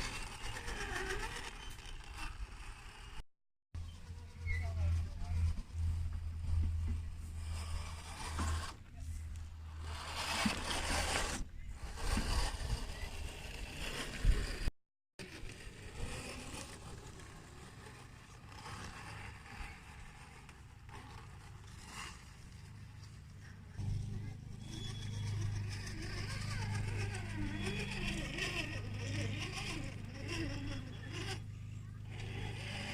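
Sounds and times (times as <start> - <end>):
small electric drivetrain running: 0.0 - 3.2, 3.8 - 32.9
tyres scraping on ground: 0.0 - 3.2, 4.0 - 32.9.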